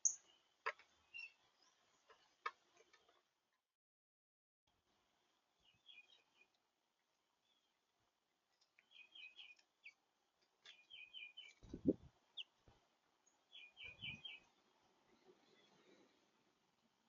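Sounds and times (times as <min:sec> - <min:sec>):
songbird chirping: 0:00.0 - 0:03.3, 0:05.0 - 0:17.0.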